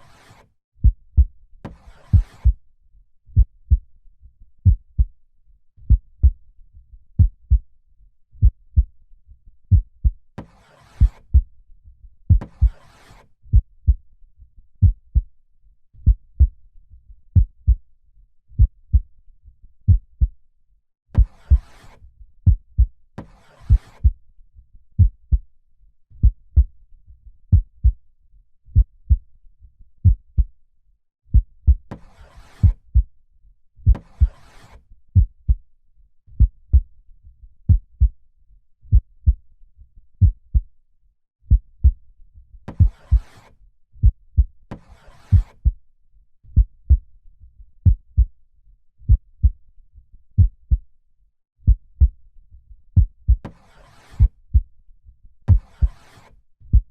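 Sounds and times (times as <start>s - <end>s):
heartbeat: 0.8s - 1.3s, 2.1s - 2.6s, 3.4s - 3.9s, 4.6s - 5.1s, 5.9s - 6.4s, 7.2s - 7.6s, 8.4s - 8.9s, 11.0s - 11.5s, 12.3s - 12.8s, 13.5s - 14.0s, 14.8s - 15.3s, 16.0s - 16.6s, 17.4s - 17.8s, 18.6s - 19.1s, 19.9s - 20.3s, 21.2s - 21.7s, 22.4s - 22.9s, 25.0s - 25.4s, 26.2s - 26.7s, 27.5s - 28.0s, 28.8s - 29.2s, 30.0s - 30.5s, 31.3s - 31.9s, 33.9s - 34.4s, 35.2s - 35.6s, 36.4s - 36.9s, 37.7s - 38.2s, 38.9s - 39.4s, 40.2s - 40.7s, 41.5s - 42.0s, 42.8s - 43.2s, 44.0s - 44.5s, 45.3s - 45.8s, 46.6s - 47.0s, 47.8s - 48.3s, 49.1s - 49.6s, 50.4s - 50.8s, 51.6s - 52.2s, 53.0s - 53.4s, 54.2s - 54.7s, 55.5s - 55.9s.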